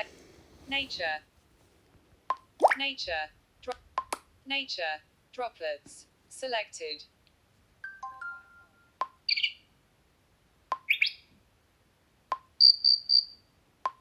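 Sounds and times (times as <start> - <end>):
bird-like chirps: 9.3 - 9.7, 10.8 - 11.3.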